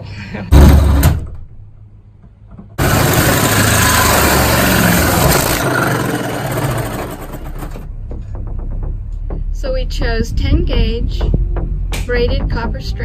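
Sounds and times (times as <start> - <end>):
drill cutting through sheet metal: 2.8 - 7.8.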